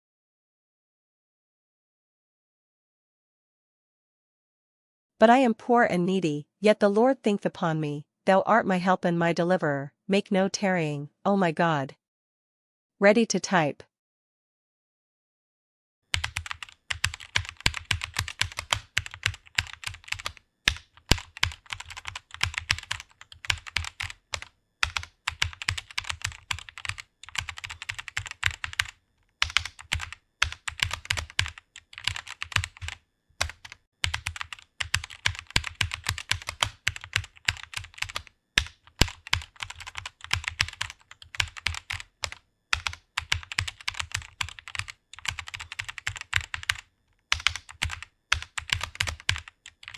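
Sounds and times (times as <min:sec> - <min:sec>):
fast typing on keyboard: 0:16.1 - 0:49.9.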